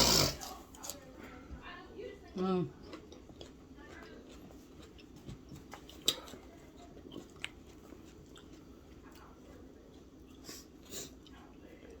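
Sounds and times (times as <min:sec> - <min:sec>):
person chewing: 0:02.8 - 0:08.7.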